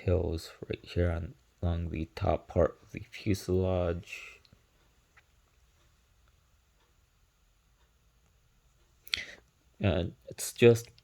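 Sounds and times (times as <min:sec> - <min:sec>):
very faint ticks: 0:03.4 - 0:09.8.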